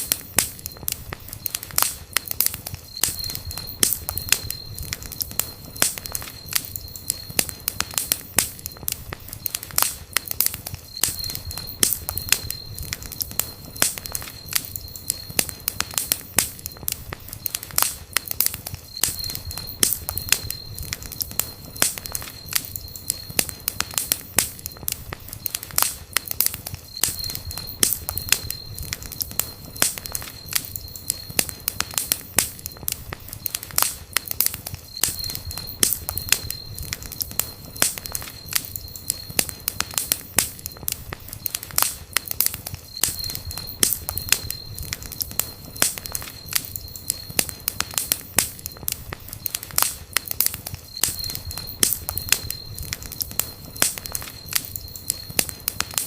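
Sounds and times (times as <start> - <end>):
campfire crackling and popping: 0.0 - 56.0
low rumble of flames: 0.0 - 56.0
thin high whistle: 2.4 - 9.7, 33.4 - 40.8, 41.4 - 48.8, 49.4 - 56.0.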